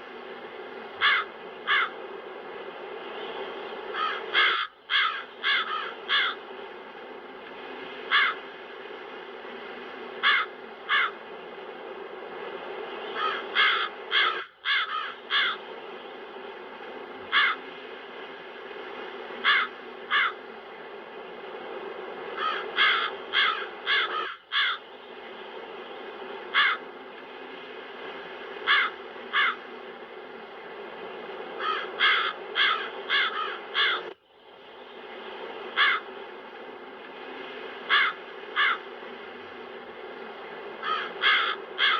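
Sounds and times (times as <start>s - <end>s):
wind: 0.0s - 41.9s
crows cawing: 1.0s - 2.0s, 3.9s - 6.5s, 8.1s - 8.5s, 10.2s - 11.2s, 13.1s - 15.6s, 17.3s - 17.6s, 19.4s - 20.4s, 22.4s - 24.8s, 26.5s - 26.8s, 28.6s - 29.6s, 31.6s - 34.2s, 35.8s - 36.1s, 37.9s - 38.9s, 40.8s - 41.9s.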